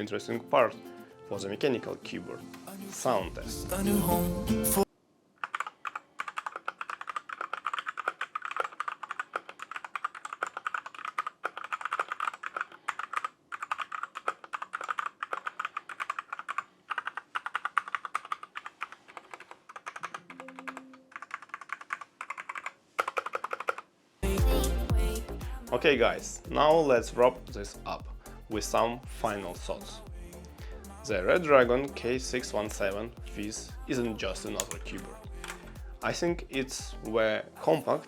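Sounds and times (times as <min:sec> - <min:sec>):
mechanical keyboard typing: 0:05.4 - 0:23.8, 0:34.6 - 0:35.7.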